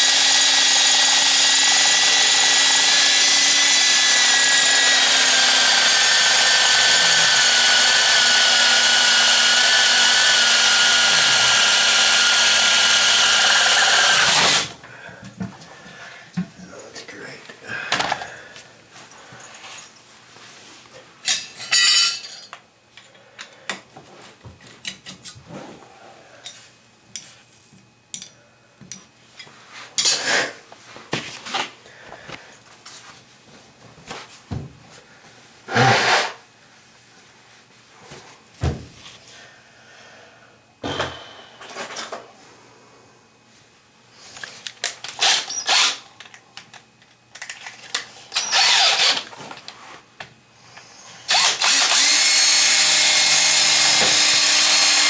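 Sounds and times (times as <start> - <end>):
power drill bursts with motor whine: 0.0 - 14.7, 45.2 - 46.0, 48.4 - 49.3, 51.3 - 55.0.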